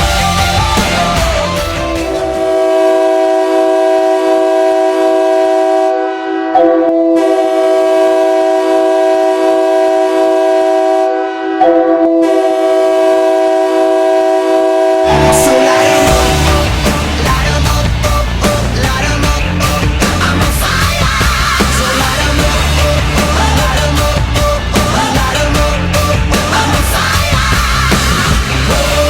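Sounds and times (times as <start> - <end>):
music: 0.0 - 2.8, 15.0 - 29.0
goal horn blasts: 0.1 - 17.3.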